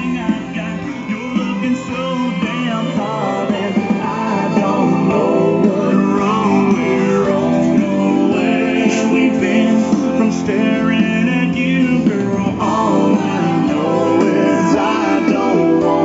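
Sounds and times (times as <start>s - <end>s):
man singing: 0.0s - 16.0s.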